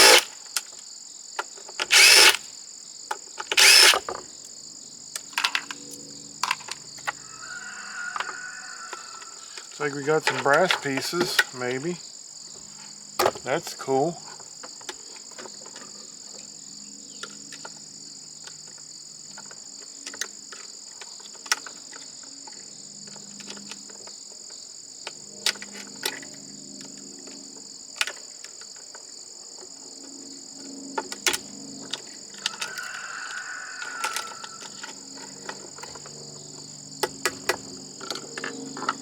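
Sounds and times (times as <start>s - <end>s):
hand tools clicking and knocking: 0.0s - 0.3s, 1.7s - 2.4s, 3.4s - 4.2s, 10.1s - 11.6s
loose metal and plastic parts: 0.0s - 0.3s, 1.8s - 2.4s, 3.4s - 4.2s, 9.6s - 11.7s
crickets chirping: 0.0s - 39.0s.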